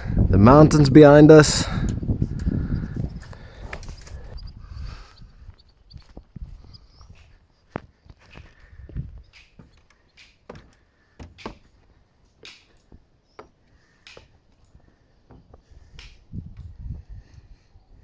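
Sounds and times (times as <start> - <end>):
light knocks and clicks: 9.3 - 11.8.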